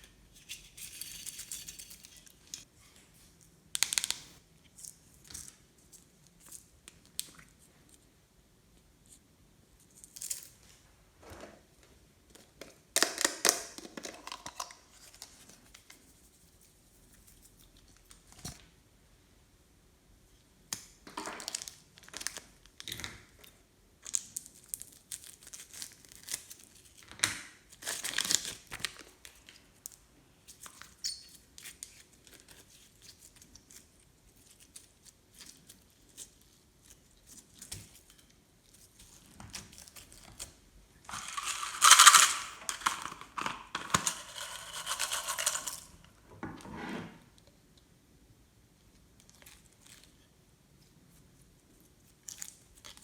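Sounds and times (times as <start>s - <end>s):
crinkling and crackling: 32.2s - 46.1s.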